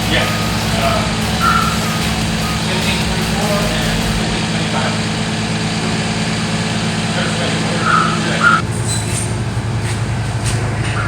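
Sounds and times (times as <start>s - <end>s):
truck engine idling: 0.0s - 11.0s
short squeaks: 7.9s - 9.4s.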